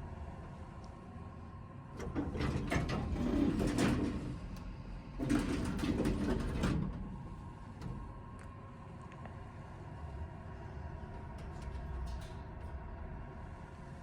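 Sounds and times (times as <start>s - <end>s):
elevator machinery rattling and squeaking: 2.0s - 4.4s.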